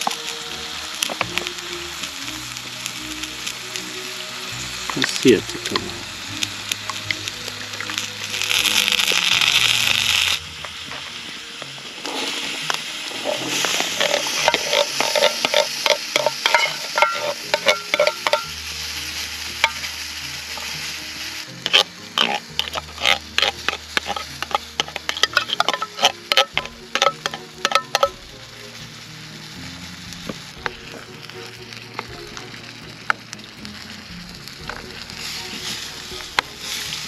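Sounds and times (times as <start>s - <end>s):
tomato sauce sizzling in a pot: 0.0s - 37.0s
spoon scraping a pot: 13.3s - 18.6s, 21.6s - 28.2s.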